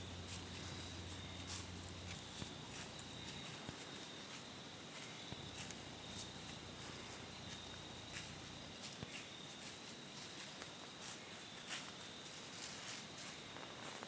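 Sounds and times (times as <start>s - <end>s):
faint high whine: 0.0s - 14.0s
footsteps in dry leaves: 0.0s - 14.0s.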